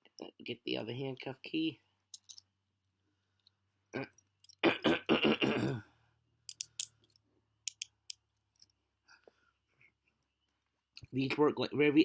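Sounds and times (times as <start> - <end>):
person throaty vocal noise: 4.0 - 5.9
handcuffs clicking metallically: 6.5 - 8.8.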